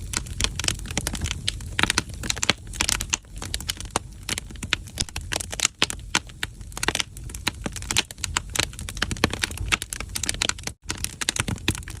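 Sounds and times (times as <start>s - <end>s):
firewood crackling: 0.0s - 12.0s.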